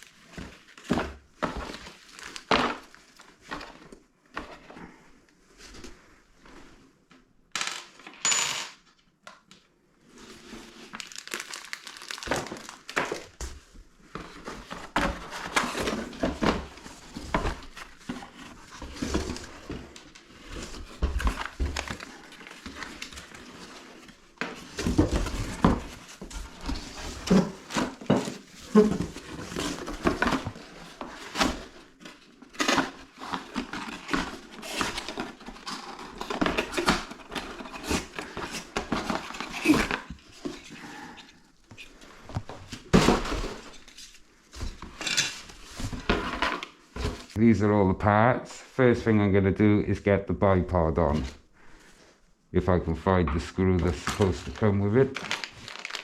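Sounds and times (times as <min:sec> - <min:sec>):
packaging rustling: 0:00.0 - 0:03.9, 0:10.2 - 0:47.4, 0:53.8 - 0:56.0.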